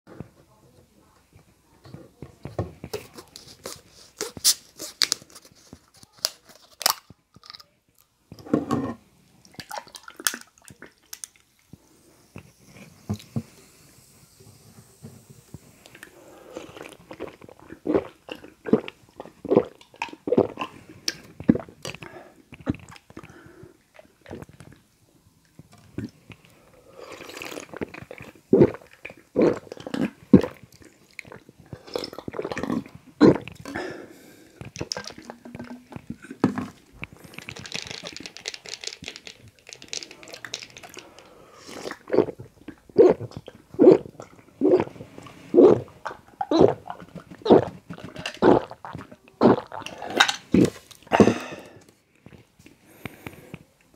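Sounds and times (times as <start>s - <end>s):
person gulping a drink: 15.8s - 24.8s, 25.6s - 53.7s.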